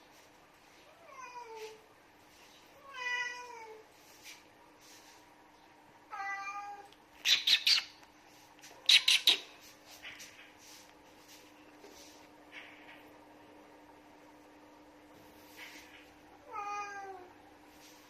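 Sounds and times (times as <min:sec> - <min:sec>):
cat meowing: 0:06.1 - 0:06.9, 0:16.4 - 0:17.3.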